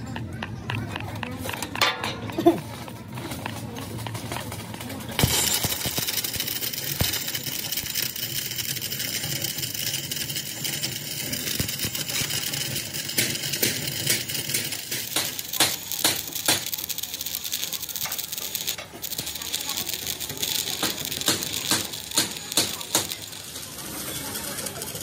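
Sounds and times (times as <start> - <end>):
sharp metallic clicks: 3.1 - 23.7
arc welding crackling hiss: 5.2 - 25.0.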